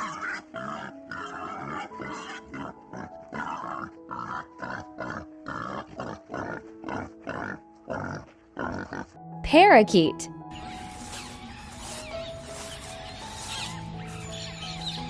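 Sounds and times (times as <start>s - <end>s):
wild boar grunting: 0.0s - 9.2s
soft background music: 0.0s - 15.0s.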